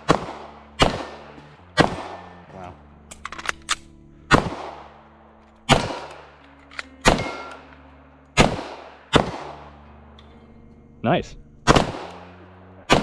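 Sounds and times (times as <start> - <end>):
pistol shots echoing: 0.0 - 2.5, 4.3 - 5.0, 5.6 - 7.8, 8.4 - 9.8, 11.6 - 13.0.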